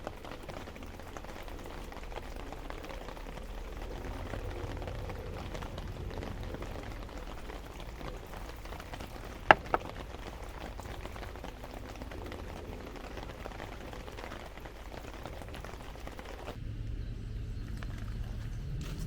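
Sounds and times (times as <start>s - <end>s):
rain pattering on a tarp: 0.0s - 16.6s
sharp knocks: 9.5s - 10.0s.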